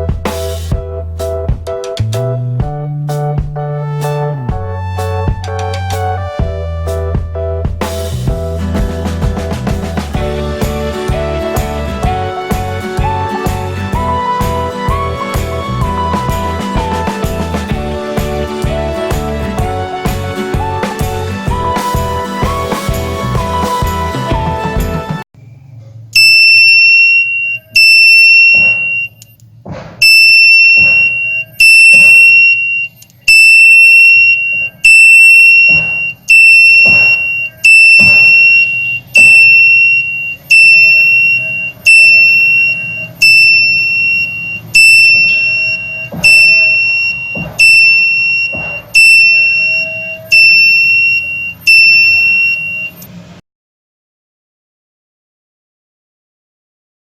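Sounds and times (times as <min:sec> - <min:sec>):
buzzer beeping: 0:26.2 - 0:29.4, 0:30.0 - 0:53.1.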